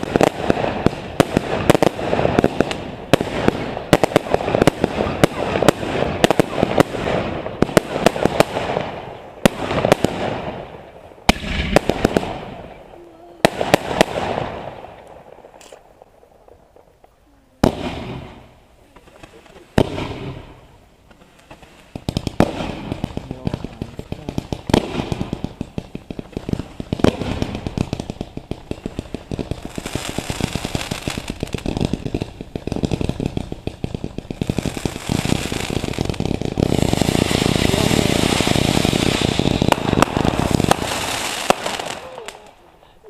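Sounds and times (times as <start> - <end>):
fireworks crackling and banging: 0.0 - 43.0.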